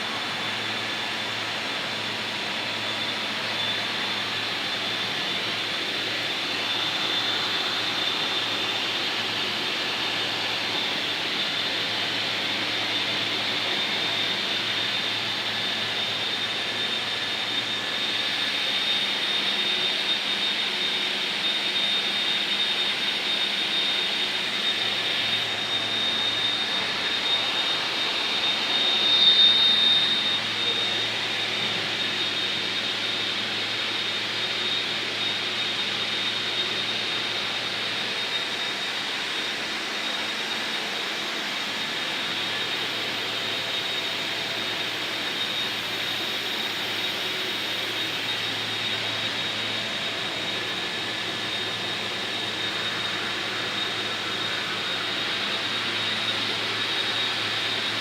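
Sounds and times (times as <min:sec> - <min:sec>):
welding arc hissing and whining: 0:00.0 - 0:58.0.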